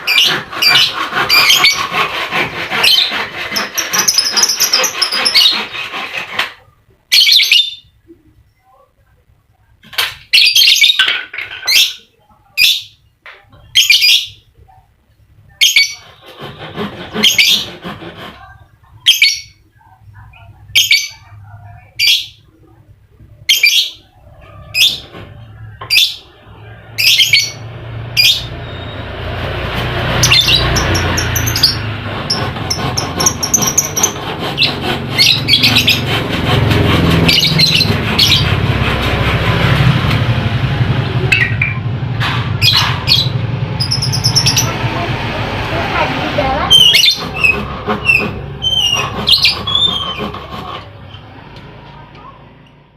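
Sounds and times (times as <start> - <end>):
rushing background noise with hum: 24.2 - 52.9.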